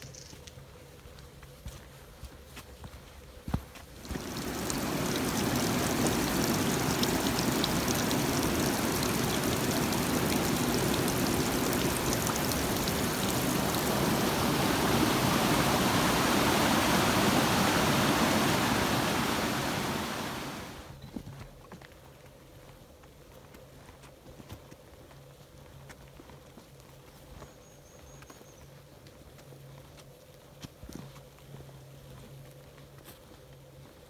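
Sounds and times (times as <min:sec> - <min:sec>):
rushing stream water: 0:04.0 - 0:20.9.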